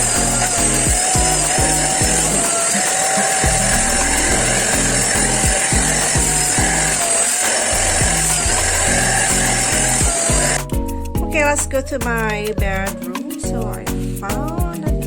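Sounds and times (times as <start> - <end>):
soft background music: 0.0 - 15.0
stick vacuum cleaner running: 0.4 - 10.6.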